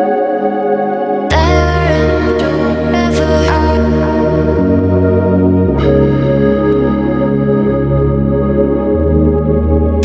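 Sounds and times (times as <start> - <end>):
electronic music with synth chords: 0.0 - 10.0.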